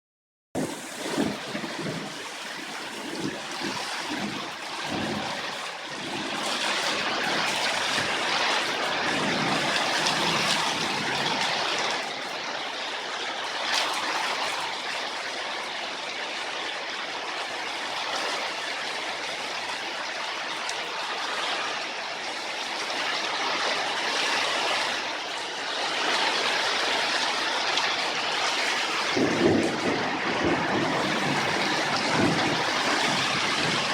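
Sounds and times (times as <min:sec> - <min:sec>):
wind thumps on microphone: 0:00.6 - 0:08.3, 0:29.0 - 0:33.9
heavy rain: 0:00.6 - 0:33.9.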